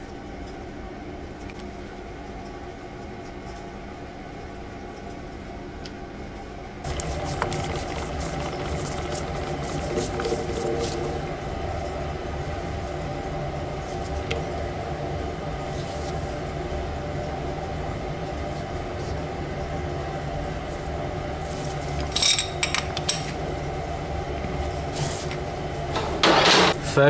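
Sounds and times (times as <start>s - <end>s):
electric motor humming: 6.9s - 15.7s.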